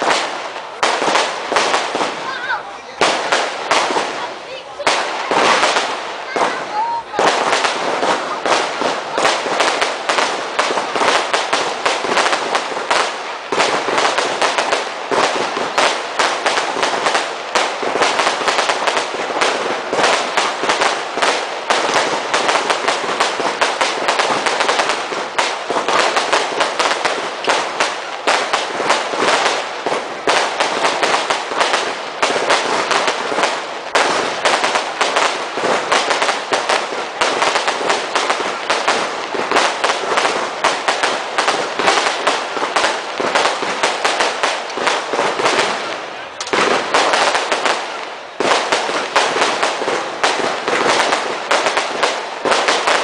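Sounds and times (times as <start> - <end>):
fireworks cracks and bangs: 0.0 - 53.0.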